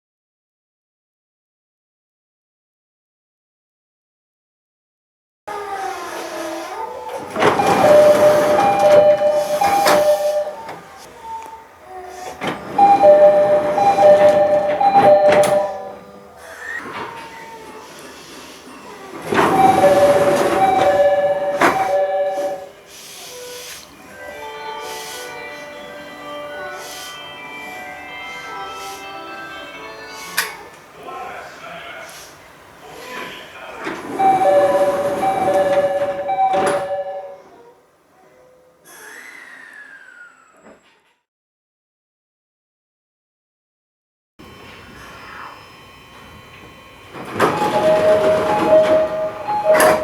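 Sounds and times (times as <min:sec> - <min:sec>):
sliding doors rushing: 0:05.5 - 0:28.7, 0:30.2 - 0:37.4, 0:46.1 - 0:50.0
doors shutting with a thud: 0:05.8 - 0:11.1, 0:12.2 - 0:17.9, 0:19.1 - 0:22.7, 0:33.8 - 0:37.4, 0:46.2 - 0:50.0
two-note train door chime: 0:07.2 - 0:10.8, 0:12.4 - 0:17.0, 0:18.5 - 0:22.8, 0:34.0 - 0:37.5, 0:46.1 - 0:50.0.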